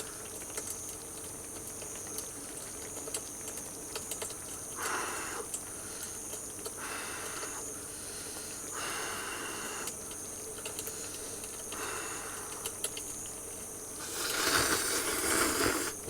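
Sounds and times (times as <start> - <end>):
faint clicks: 9.8 - 11.8, 12.4 - 13.2.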